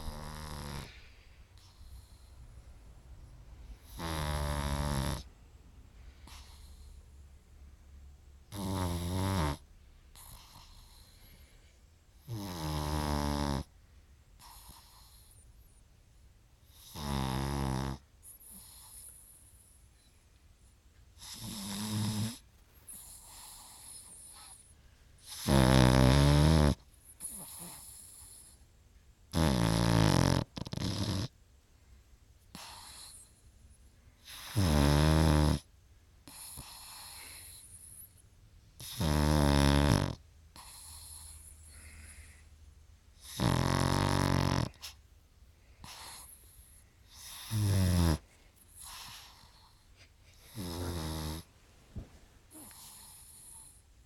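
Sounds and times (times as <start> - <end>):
dog snoring: 0.0 - 2.6, 3.7 - 5.3, 6.2 - 7.2, 8.4 - 11.5, 12.2 - 13.8, 14.4 - 15.8, 16.6 - 19.8, 21.2 - 28.6, 29.3 - 31.4, 32.5 - 33.4, 34.2 - 38.2, 38.8 - 42.4, 43.2 - 45.0, 45.8 - 53.8
dog breathing quietly: 0.0 - 7.6, 40.5 - 42.6, 44.6 - 54.0.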